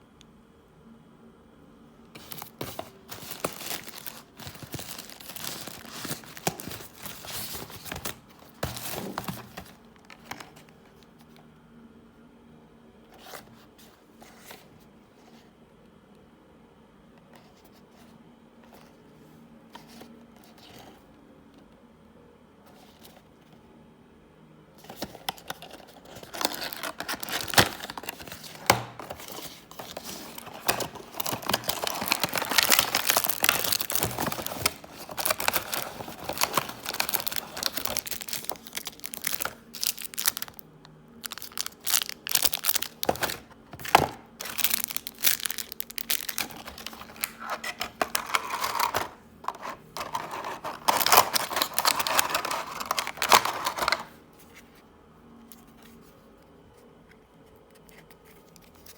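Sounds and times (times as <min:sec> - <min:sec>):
packaging crinkling and rustling: 0:02.2 - 0:11.1, 0:24.8 - 0:40.6, 0:41.2 - 0:54.2.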